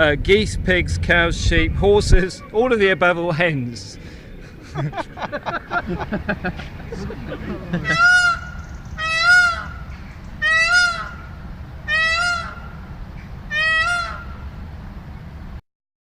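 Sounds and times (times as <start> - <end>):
steady low rumble: 0.0 - 15.6
goose honking: 3.9 - 14.5.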